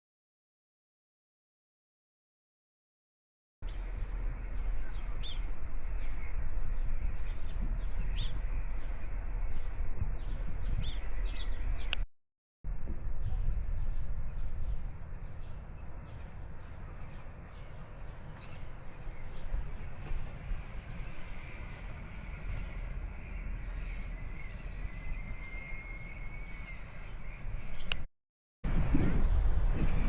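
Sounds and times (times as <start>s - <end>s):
wind buffeting microphone: 3.6s - 12.0s, 12.7s - 30.0s
faint thin whistle: 24.4s - 27.0s.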